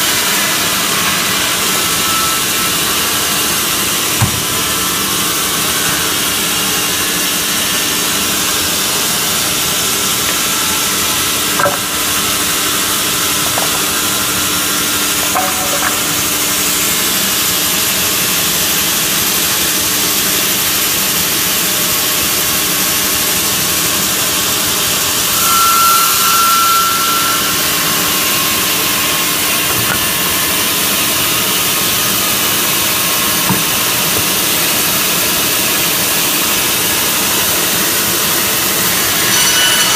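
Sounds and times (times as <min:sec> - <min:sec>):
band saw cutting wood: 0:37.8 - 0:39.9.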